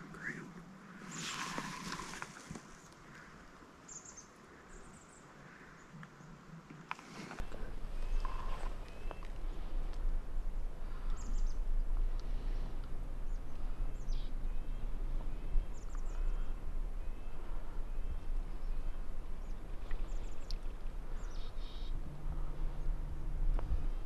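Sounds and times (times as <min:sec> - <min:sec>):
small birds chirping: 0:02.7 - 0:06.4, 0:10.9 - 0:11.7, 0:13.2 - 0:22.0
turkey drumming low hum: 0:20.6 - 0:24.0.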